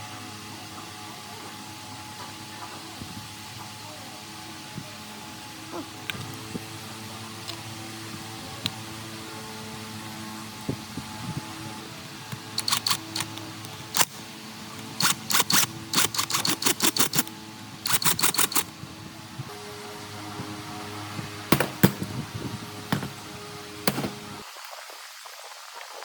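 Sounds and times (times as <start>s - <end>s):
hand tools clicking on metal: 12.6s - 14.2s, 15.0s - 18.7s
background music: 19.4s - 24.4s.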